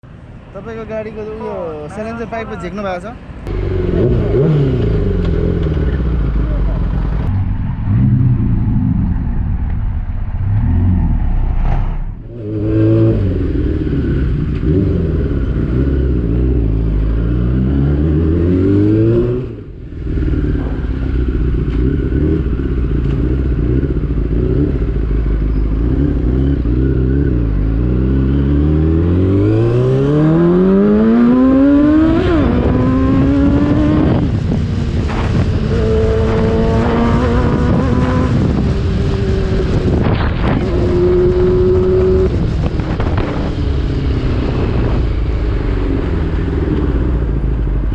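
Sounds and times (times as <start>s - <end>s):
motorcycle engine revving: 3.5s - 9.6s, 10.3s - 47.9s.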